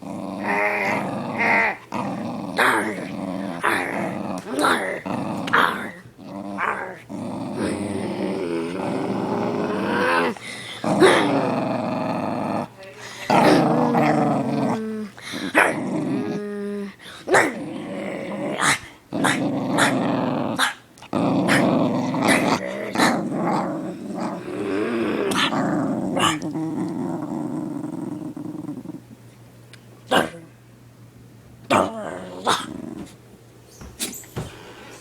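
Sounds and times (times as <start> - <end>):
dog growling: 0.0 - 29.2, 31.7 - 33.2
dog sneezing: 34.0 - 34.4.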